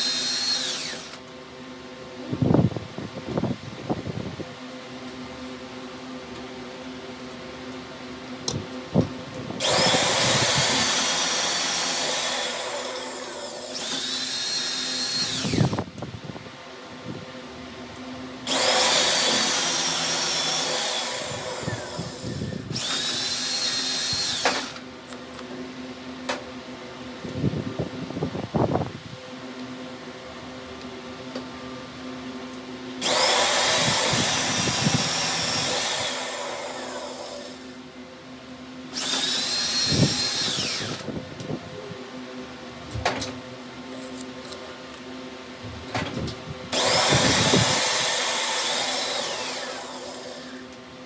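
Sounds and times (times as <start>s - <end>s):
high-pitched electric power tool: 0.0s - 1.2s, 9.6s - 15.9s, 18.5s - 24.8s, 33.0s - 37.8s, 38.9s - 41.1s, 46.7s - 50.8s.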